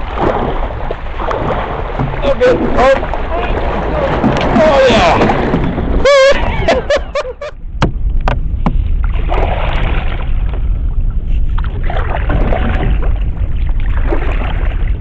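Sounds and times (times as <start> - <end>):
paddle strokes swishing water: 0.0 - 7.6, 8.2 - 15.0
steady low rumble: 0.0 - 15.0
sharp knocks on canoe: 1.2 - 6.0, 7.8 - 8.8.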